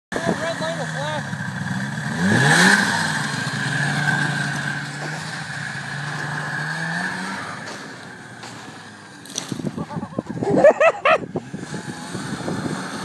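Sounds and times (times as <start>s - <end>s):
high engine whine: 0.2s - 10.4s
snowmobile engine revving: 0.2s - 13.0s.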